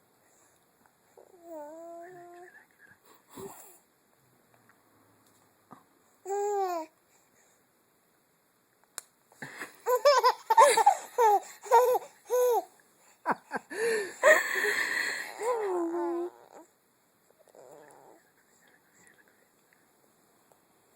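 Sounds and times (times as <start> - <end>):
baby laughing: 9.8 - 12.7.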